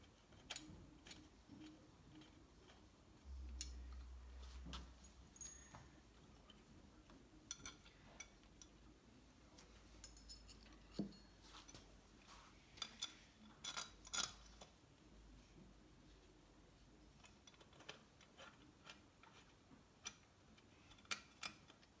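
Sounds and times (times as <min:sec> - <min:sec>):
metallic clinks of tools: 0:05.0 - 0:06.2, 0:10.0 - 0:11.9.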